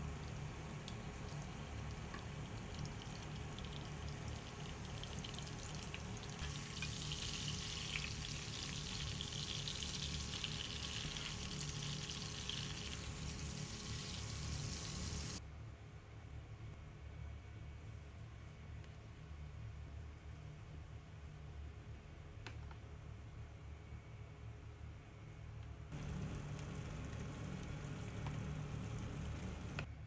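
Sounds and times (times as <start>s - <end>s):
food sizzling in a frying pan: 0.0s - 15.4s, 26.0s - 29.8s.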